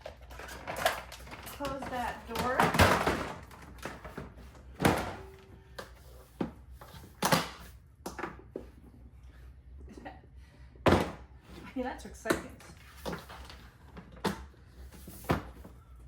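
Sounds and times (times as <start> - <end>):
dog crate folding knocks and clacks: 0.0 - 5.4.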